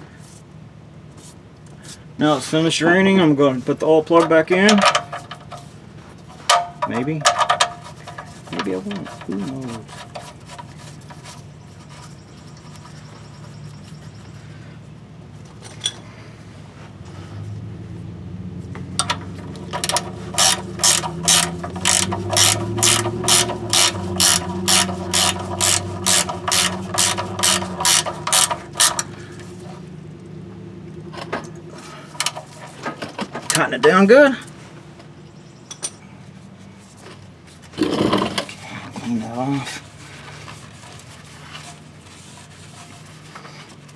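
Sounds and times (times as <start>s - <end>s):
socket ratchet clicking: 19.0s - 29.2s, 32.2s - 32.5s.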